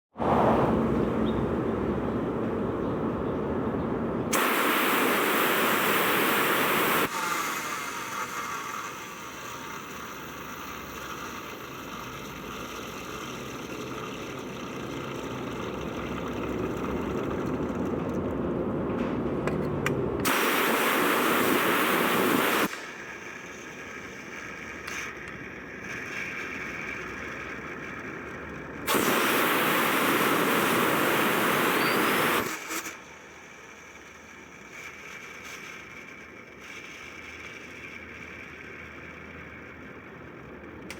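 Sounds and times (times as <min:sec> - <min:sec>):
loud even hiss: 0:04.3 - 0:11.8, 0:20.2 - 0:25.1, 0:28.8 - 0:35.5
idler pulley noise: 0:07.0 - 0:20.3, 0:21.5 - 0:29.1, 0:31.8 - 0:40.9.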